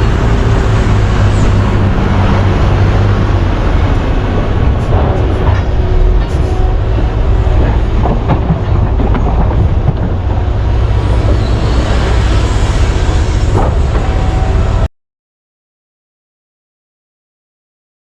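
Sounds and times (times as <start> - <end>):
diesel machinery rumble: 0.0 - 14.9
metal clanks and knocks: 4.3 - 10.7.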